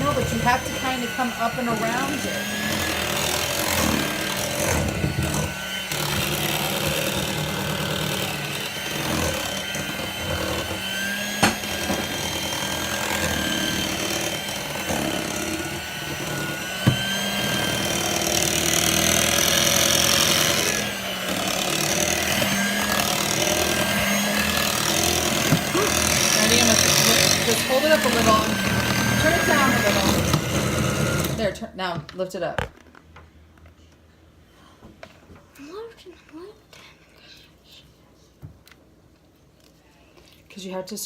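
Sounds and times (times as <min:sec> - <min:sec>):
electric hand mixer whining: 0:00.0 - 0:31.6.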